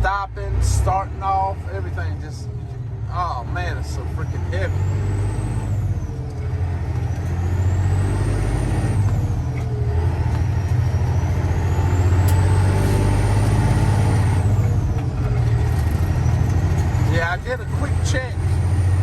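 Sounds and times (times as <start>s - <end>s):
diesel truck engine rumbling: 0.0s - 19.0s.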